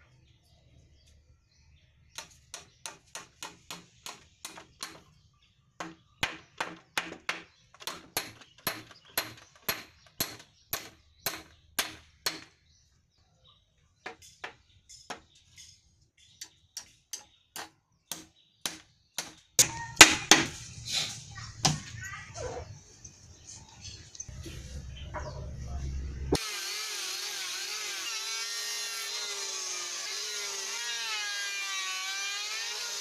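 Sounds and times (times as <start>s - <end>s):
hammer striking nails into wood: 2.2s - 5.1s, 5.8s - 12.6s, 16.8s - 20.6s.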